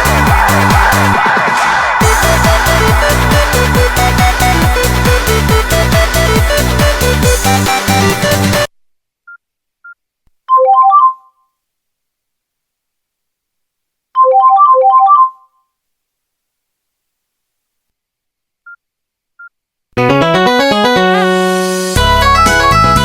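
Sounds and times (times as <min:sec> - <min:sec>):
electronic dance-style ringtone: 0:02.0 - 0:08.7, 0:14.2 - 0:15.6
bright electronic ringtone notes: 0:10.5 - 0:11.4, 0:14.2 - 0:15.6.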